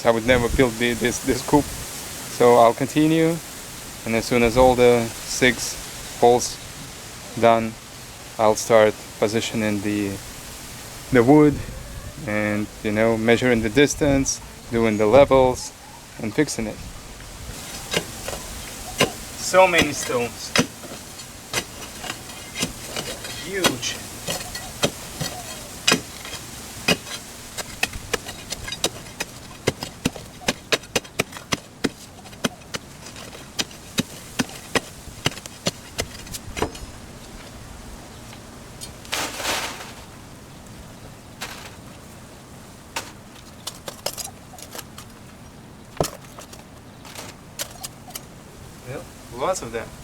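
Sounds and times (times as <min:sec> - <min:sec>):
scraping rush: 0:17.5 - 0:30.0, 0:39.0 - 0:40.4
stones clacking together: 0:17.6 - 0:36.8, 0:41.4 - 0:42.1.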